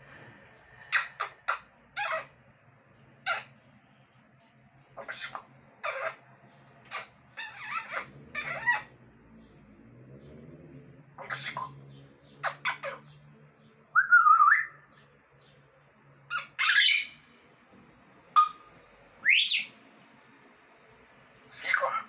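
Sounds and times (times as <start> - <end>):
parrot squawks and whistles: 14.0 - 14.8, 18.4 - 19.8, 21.5 - 22.0.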